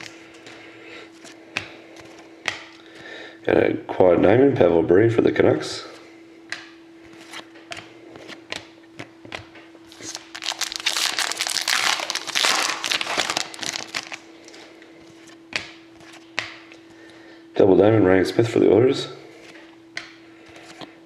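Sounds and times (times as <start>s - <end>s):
faint steady hum: 0.0s - 21.0s
wrapper tearing and crinkling: 9.9s - 14.2s.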